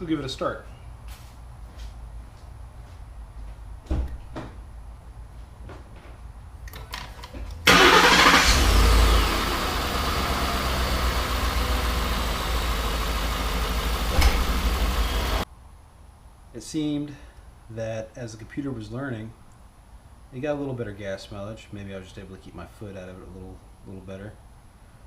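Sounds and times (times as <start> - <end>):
truck engine starting and idling: 7.6 - 15.4.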